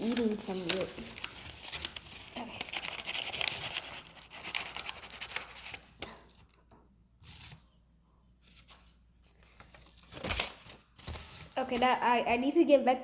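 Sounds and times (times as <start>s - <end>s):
crinkling and tearing: 0.0s - 6.6s.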